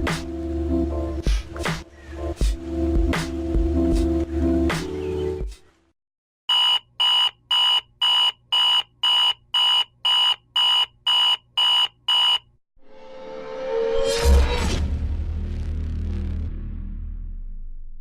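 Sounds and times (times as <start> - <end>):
alarm clock beeping: 6.5 - 12.4.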